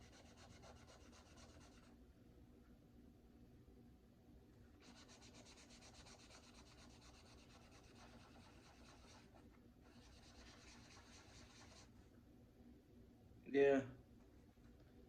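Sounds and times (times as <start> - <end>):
faint hand rubbing on metal: 4.8 - 11.9.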